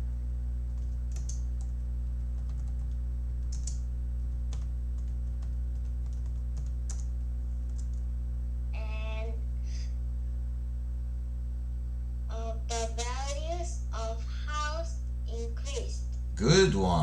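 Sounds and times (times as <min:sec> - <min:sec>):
low electrical hum: 0:00.0 - 0:17.0
computer keyboard typing: 0:00.7 - 0:03.8, 0:04.5 - 0:08.0.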